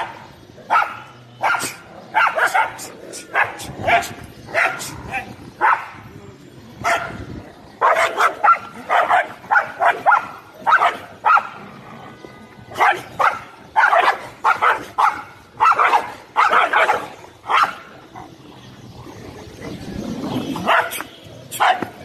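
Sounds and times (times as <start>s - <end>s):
dog barking: 0.7s - 6.0s, 6.8s - 7.2s, 7.8s - 11.6s, 12.8s - 17.9s, 20.6s - 22.0s.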